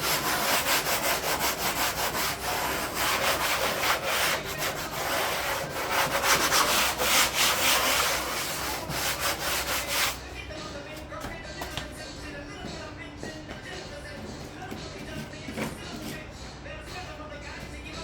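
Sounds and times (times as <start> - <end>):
sandpaper rubbing a surface: 0.0 - 10.2.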